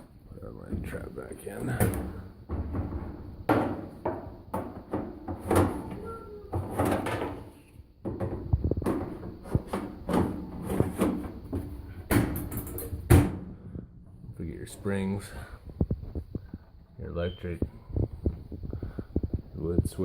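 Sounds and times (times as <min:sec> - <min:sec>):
sheet metal parts clattering: 0:01.6 - 0:13.3.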